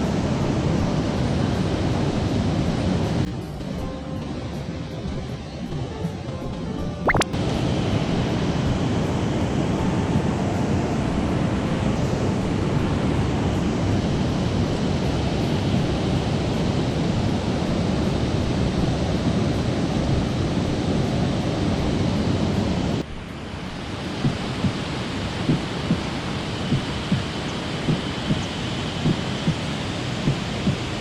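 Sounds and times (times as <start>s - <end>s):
sharp clicks: 7.1s - 7.3s
stream water rushing: 22.2s - 31.0s.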